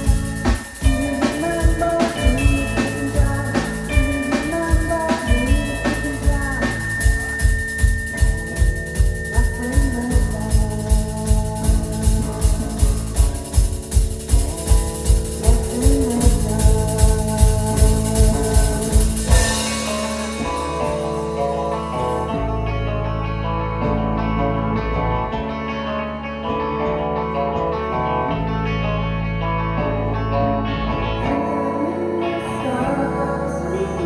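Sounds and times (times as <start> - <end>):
drum kit steady beat: 0.0 - 22.2
sustained guitar and keyboard tones: 0.0 - 34.0.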